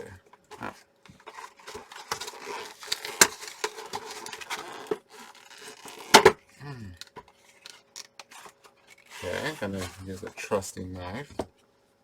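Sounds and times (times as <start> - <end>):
cardboard box crackling and rubbing: 1.2 - 6.2, 8.3 - 10.5.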